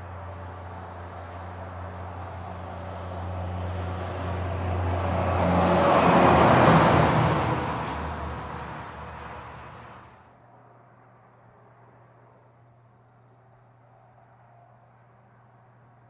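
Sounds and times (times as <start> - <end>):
heavy truck passing: 0.0 - 10.2.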